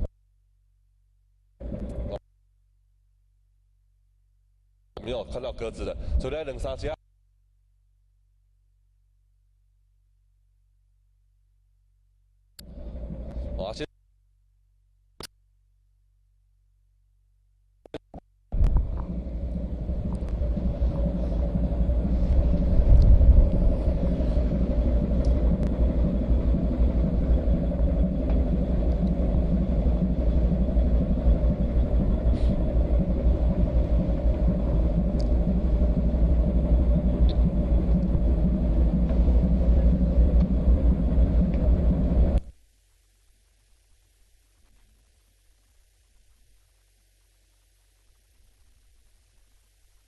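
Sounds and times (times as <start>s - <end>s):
ship engine rumbling: 18.5s - 42.5s.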